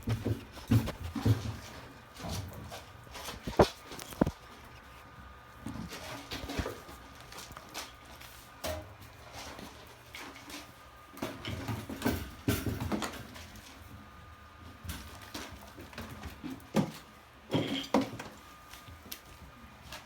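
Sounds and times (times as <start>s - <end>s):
clicks knocks and rustles: 3.1s - 4.4s.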